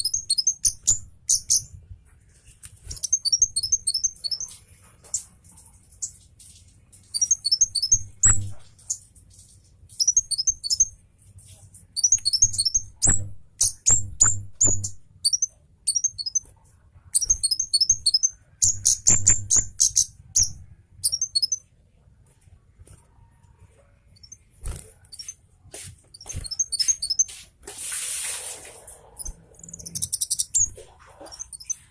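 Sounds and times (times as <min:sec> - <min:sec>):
bird singing high thin notes: 0:07.2 - 0:08.6.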